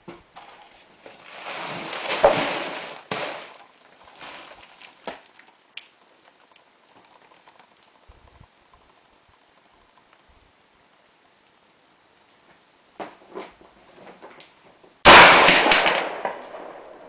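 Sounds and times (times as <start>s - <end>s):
handling rustling and sliding: 0.2s - 5.6s.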